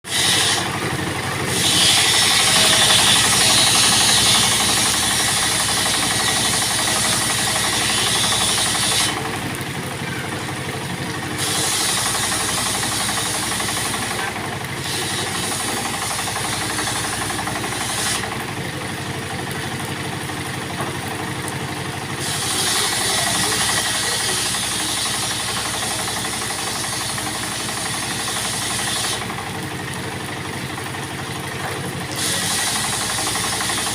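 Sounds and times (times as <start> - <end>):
saw blade cutting material: 0.0 - 0.8, 1.5 - 9.2, 11.4 - 18.3, 22.2 - 29.2, 32.1 - 33.9
circular saw running: 0.0 - 33.9.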